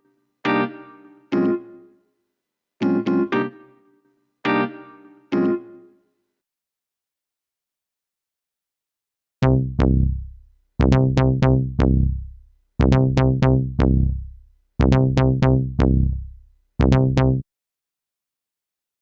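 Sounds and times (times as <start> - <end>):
bass-heavy synthesized notes: 9.4 - 17.4.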